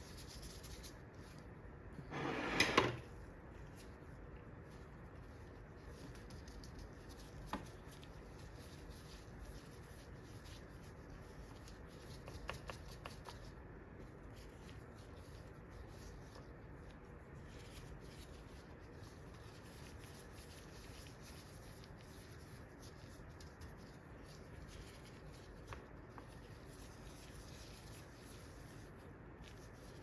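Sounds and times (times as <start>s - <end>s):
air-conditioner hum: 0.0s - 30.0s
hands tapping and rustling: 3.0s - 14.9s, 19.6s - 30.0s.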